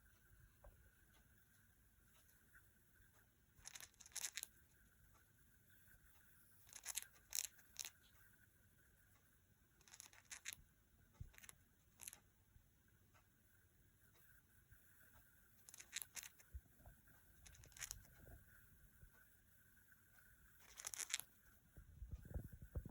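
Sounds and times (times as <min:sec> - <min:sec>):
bird beak grinding: 0:06.7 - 0:08.0, 0:09.8 - 0:10.6, 0:15.7 - 0:16.4, 0:20.6 - 0:21.3.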